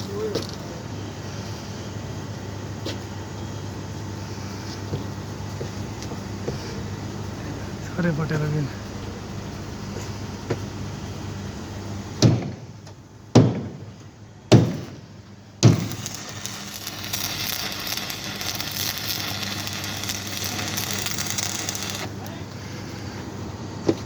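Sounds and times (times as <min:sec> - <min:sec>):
crackling hiss: 0:15.1 - 0:23.4.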